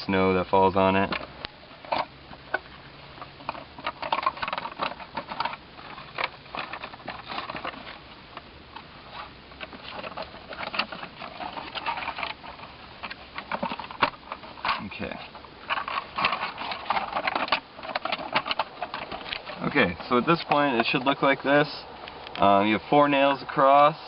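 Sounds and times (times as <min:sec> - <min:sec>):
nails clicking and scraping on plastic: 0:03.4 - 0:08.4, 0:09.1 - 0:21.2.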